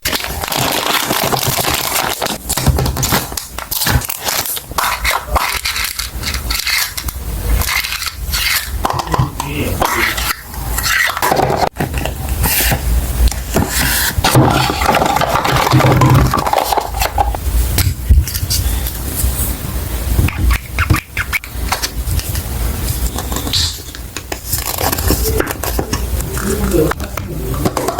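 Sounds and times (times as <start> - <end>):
plastic packaging crinkling: 0.0 - 9.0, 9.9 - 27.9.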